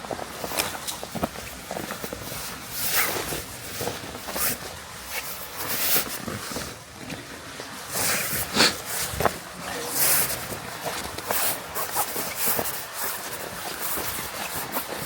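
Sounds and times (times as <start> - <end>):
footsteps crunching in snow: 0.0 - 15.0.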